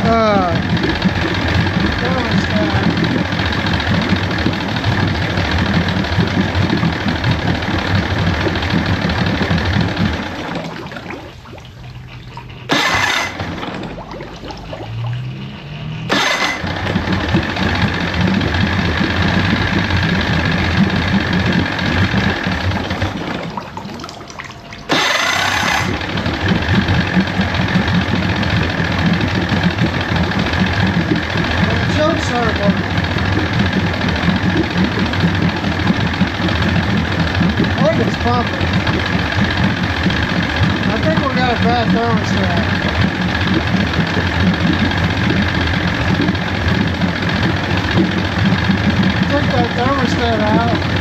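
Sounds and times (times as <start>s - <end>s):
outboard motor running: 0.0s - 51.0s.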